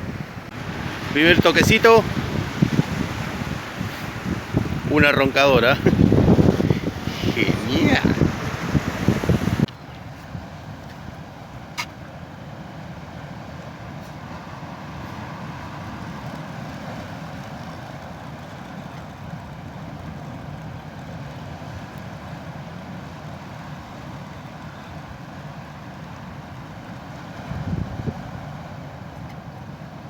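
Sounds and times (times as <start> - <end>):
wind rumbling on microphone: 0.0 - 10.8, 27.3 - 28.9
sea surf against rocks: 0.0 - 30.0.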